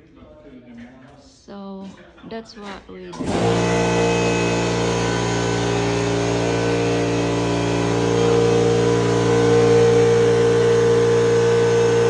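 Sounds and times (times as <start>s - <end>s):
motor-driven machine running: 3.2s - 12.0s.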